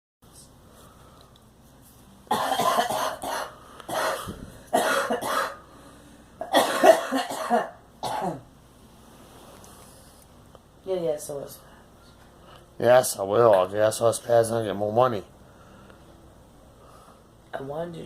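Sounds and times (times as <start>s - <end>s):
girl coughing: 2.3s - 5.6s, 6.4s - 8.5s.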